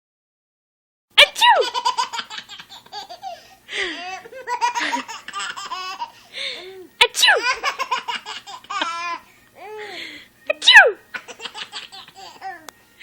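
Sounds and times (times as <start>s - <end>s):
baby laughing: 1.3s - 12.7s
breathy gasps: 3.3s - 4.1s, 6.1s - 6.9s, 9.3s - 10.4s.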